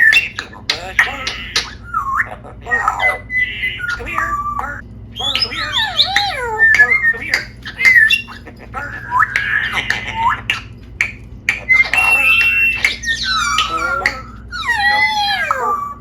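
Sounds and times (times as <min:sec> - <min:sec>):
parrot squawking and whistling: 0:00.0 - 0:16.0
parrot clicks: 0:09.2 - 0:14.4.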